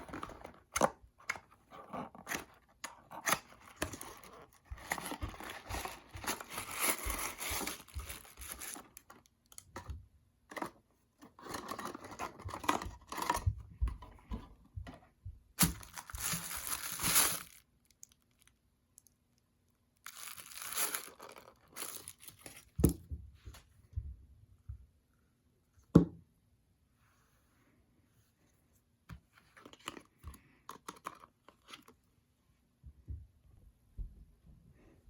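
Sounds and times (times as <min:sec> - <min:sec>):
packaging tearing and crinkling: 0:03.2 - 0:09.2, 0:15.6 - 0:18.5, 0:20.0 - 0:22.8.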